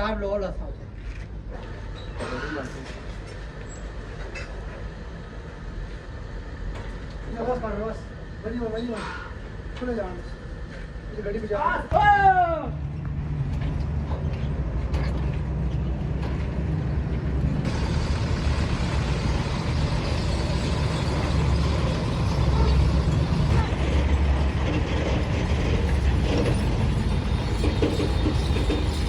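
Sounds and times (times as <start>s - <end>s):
heavy engine running: 12.9s - 29.0s.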